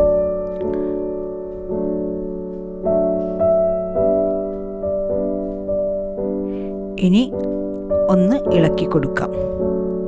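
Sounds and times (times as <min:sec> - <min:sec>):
electric piano chords: 0:00.0 - 0:10.0.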